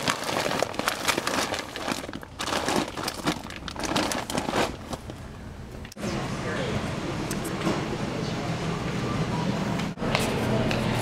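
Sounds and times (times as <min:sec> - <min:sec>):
crinkling and rustling: 0:00.0 - 0:05.2.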